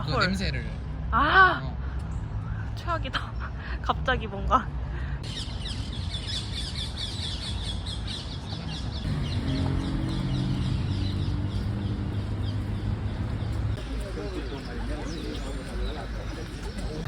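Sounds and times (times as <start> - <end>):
small birds chirping: 5.2 - 17.0.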